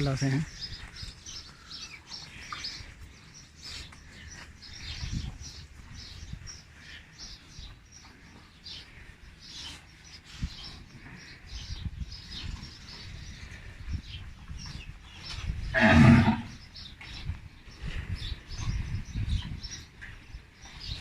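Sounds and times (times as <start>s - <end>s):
small birds chirping: 0.0s - 21.0s
bull mooing: 15.7s - 16.6s.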